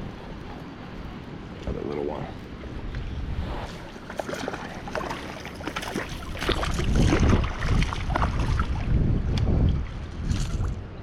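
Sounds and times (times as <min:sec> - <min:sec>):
wind buffeting microphone: 0:00.0 - 0:11.0
water splashes: 0:03.4 - 0:10.8.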